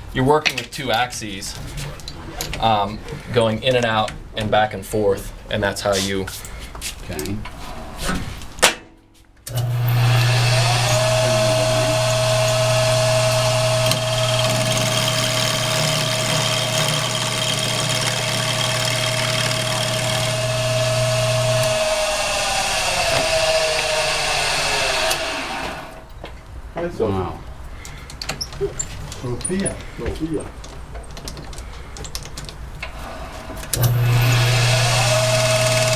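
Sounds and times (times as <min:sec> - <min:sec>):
lathe motor humming and whining: 0:09.5 - 0:26.0, 0:33.7 - 0:35.9.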